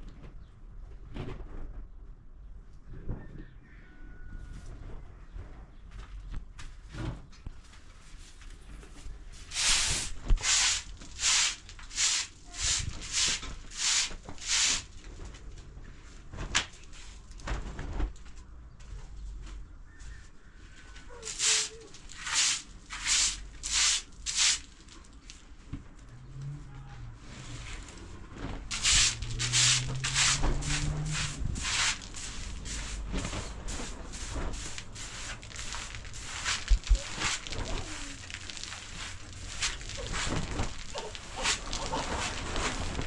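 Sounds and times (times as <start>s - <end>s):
rhythmic scraping strokes: 28.7s - 43.0s.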